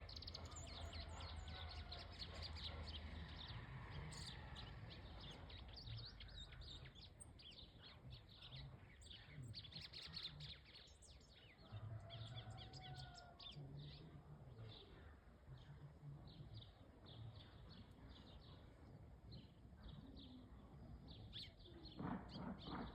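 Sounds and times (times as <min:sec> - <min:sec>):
bird chirping: 0:00.0 - 0:15.0.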